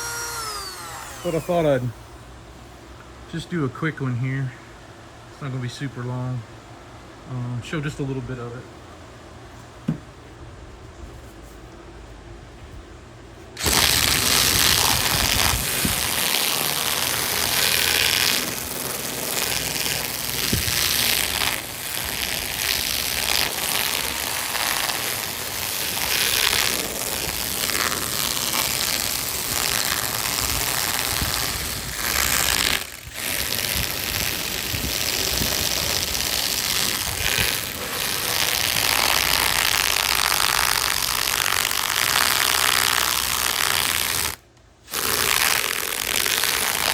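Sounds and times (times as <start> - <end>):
power carving tool cutting wood: 0.0 - 2.0, 13.6 - 46.9.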